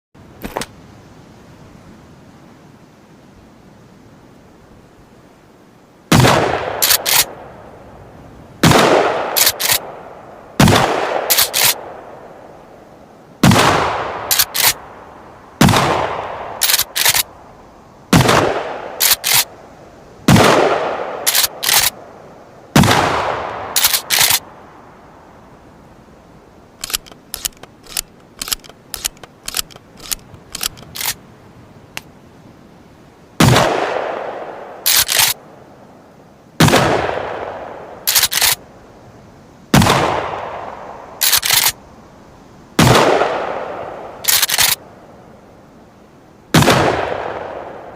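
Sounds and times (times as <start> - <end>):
quick clicks: 6.8 - 7.3, 9.4 - 9.8, 11.3 - 11.8, 14.3 - 14.8, 16.6 - 17.3, 19.0 - 19.5, 21.3 - 22.0, 23.8 - 24.4, 26.8 - 31.2, 34.9 - 35.4, 38.1 - 38.6, 41.2 - 41.8, 44.2 - 44.8
shotgun slide clacks: 6.8 - 7.3, 9.4 - 9.8, 11.3 - 11.8, 14.3 - 14.8, 16.6 - 17.3, 19.0 - 19.5, 21.3 - 21.9, 23.8 - 24.4, 26.8 - 31.2, 34.9 - 35.4, 38.1 - 38.6, 41.2 - 41.8, 44.2 - 44.8
shotgun shots with echo: 10.6 - 11.8, 18.2 - 19.4, 20.3 - 21.9, 42.8 - 43.6.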